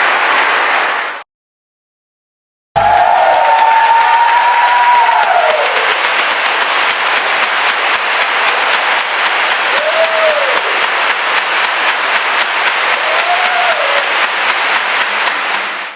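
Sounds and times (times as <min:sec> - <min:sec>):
crowd applauding: 0:00.0 - 0:01.2, 0:02.8 - 0:15.9
call from the crowd: 0:02.8 - 0:07.0, 0:09.6 - 0:11.0, 0:12.8 - 0:14.6.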